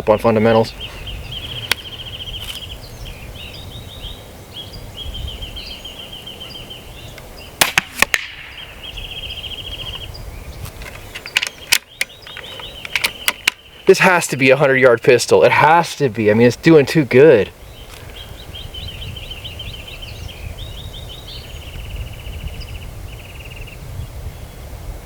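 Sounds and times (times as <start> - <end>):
air pistol shot: 7.6 - 8.6.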